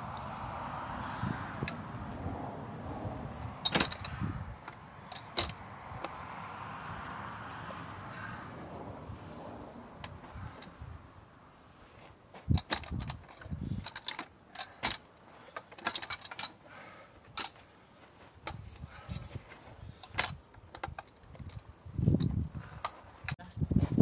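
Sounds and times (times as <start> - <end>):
metallic clinks and rattles: 3.6 - 5.7, 12.4 - 16.6, 18.4 - 23.4.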